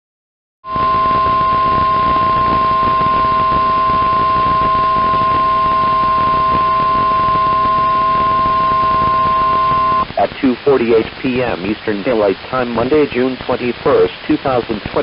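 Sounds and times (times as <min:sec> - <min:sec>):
faint lower tone: 0:00.7 - 0:10.1
receiver hiss: 0:00.7 - 0:15.0.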